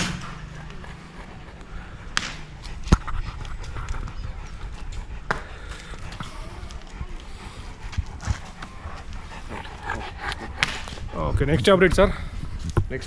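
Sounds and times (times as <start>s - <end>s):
large dog panting: 0.0s - 12.6s.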